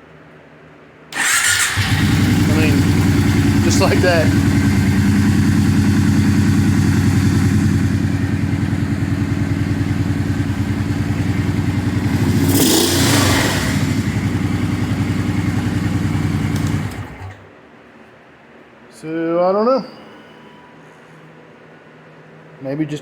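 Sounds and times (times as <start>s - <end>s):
engine idling: 1.2s - 17.5s.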